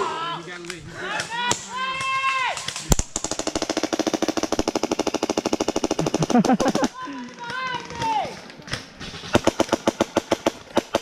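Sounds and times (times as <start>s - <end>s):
airsoft gun firing full-auto: 2.9s - 6.9s, 9.3s - 11.0s.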